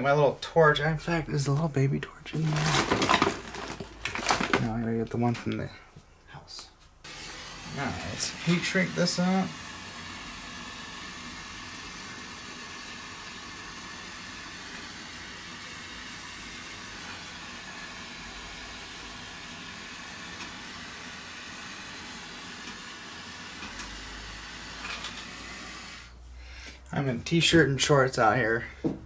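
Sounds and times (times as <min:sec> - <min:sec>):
gas burner flame hissing: 0:07.0 - 0:26.8.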